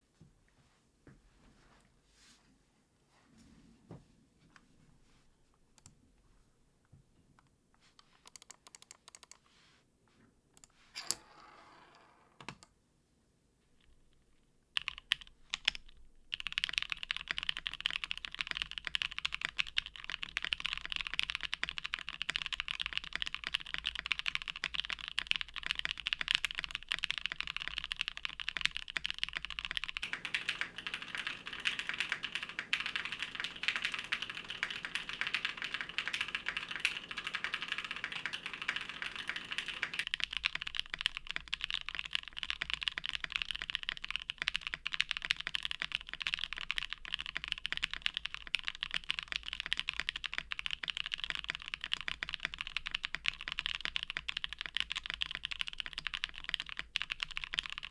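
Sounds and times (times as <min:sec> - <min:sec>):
mechanical keyboard typing: 0:08.0 - 0:09.4, 0:14.8 - 0:57.9.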